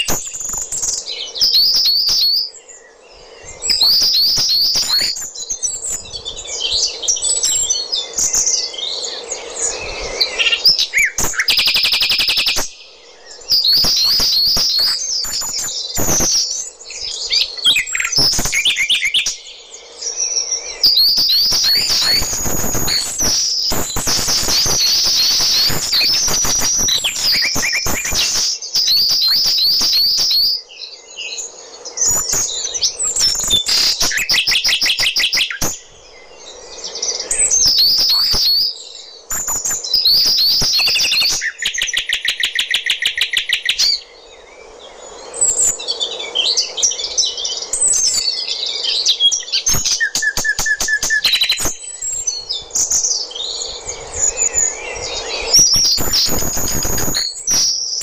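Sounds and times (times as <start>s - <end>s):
small birds chirping and trilling: 0.0s - 58.0s.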